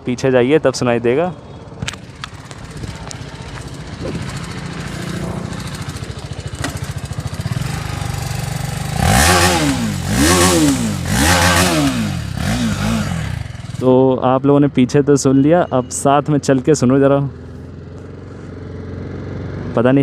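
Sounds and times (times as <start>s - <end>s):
motorcycle engine idling and revving: 0.0s - 20.0s.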